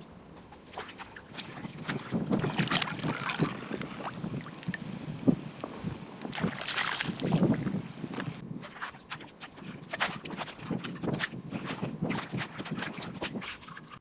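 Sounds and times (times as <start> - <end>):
shallow water splashing: 0.5 - 14.0.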